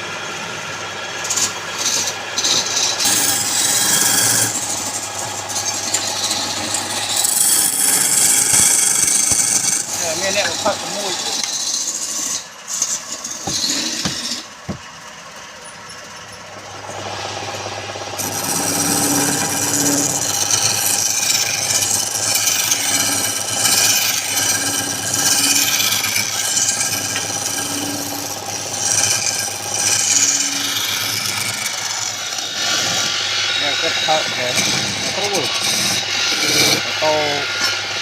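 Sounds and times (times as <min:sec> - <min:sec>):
lathe motor hum: 0:00.0 - 0:38.0
tool scraping spinning wood: 0:00.0 - 0:38.0
sharp knocks: 0:13.4 - 0:14.9.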